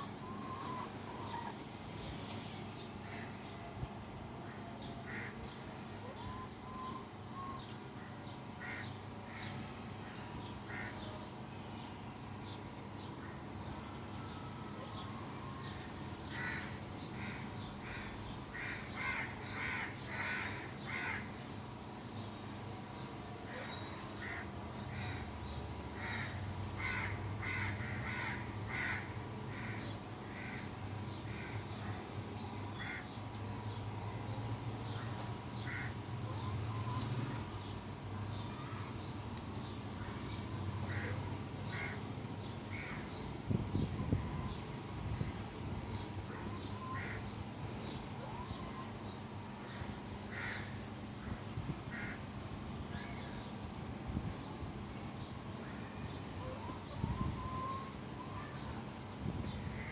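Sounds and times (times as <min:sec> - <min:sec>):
harsh lower bird calls: 0:04.5 - 0:11.1, 0:55.7 - 0:58.7.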